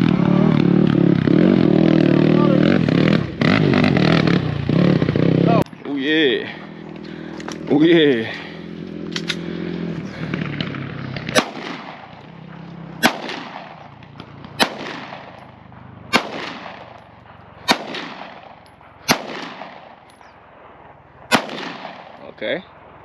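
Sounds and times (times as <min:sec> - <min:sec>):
low steady hum: 0:00.0 - 0:23.0
gunshots with echo: 0:05.8 - 0:23.0.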